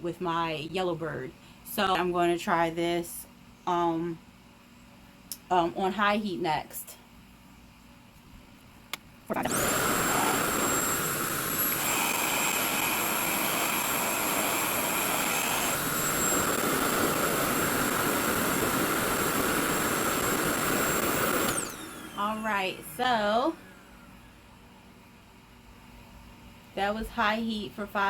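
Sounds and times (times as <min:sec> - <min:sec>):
hair dryer fan whining: 0:09.3 - 0:24.7.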